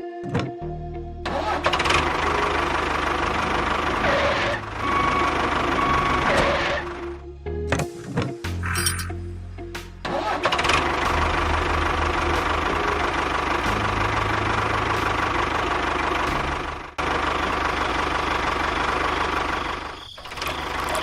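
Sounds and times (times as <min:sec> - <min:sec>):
engine running roughly: 0:01.3 - 0:07.2, 0:10.1 - 0:21.0.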